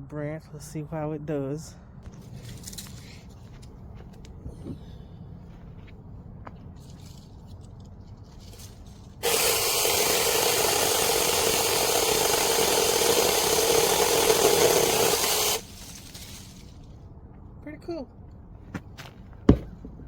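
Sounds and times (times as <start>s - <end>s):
mini chainsaw cutting branch: 8.5s - 16.8s.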